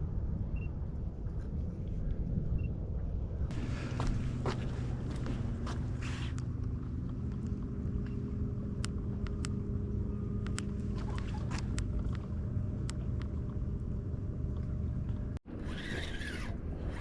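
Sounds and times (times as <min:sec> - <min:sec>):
small boat motor humming: 0:03.4 - 0:17.0.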